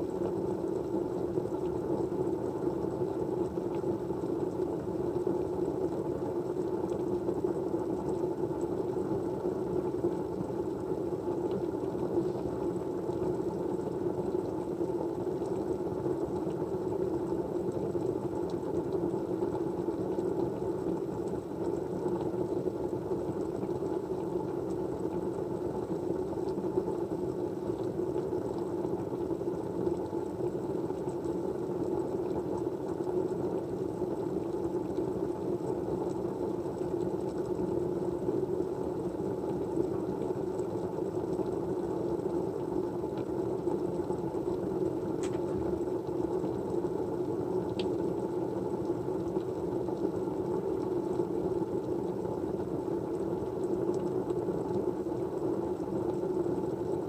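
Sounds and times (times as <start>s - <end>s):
steady white noise: 0.0s - 57.0s
faint tick: 43.1s - 43.3s, 45.2s - 45.6s, 47.7s - 48.0s.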